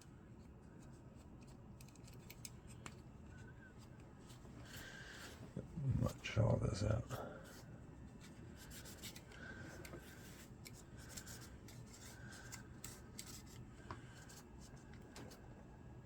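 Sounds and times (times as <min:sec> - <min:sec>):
small irregular clicks: 0:01.4 - 0:03.0.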